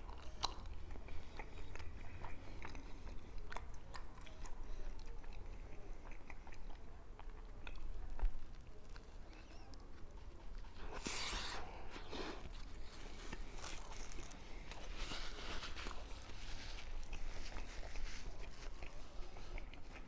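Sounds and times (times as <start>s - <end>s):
person chewing food: 0.0s - 20.0s
crunching and rustling: 7.8s - 20.0s.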